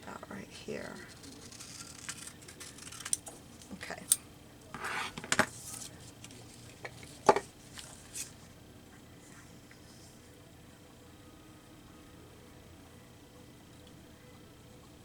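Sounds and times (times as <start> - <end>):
paper rustle: 1.1 - 3.7, 4.8 - 8.4
scissors clicking: 1.3 - 3.3.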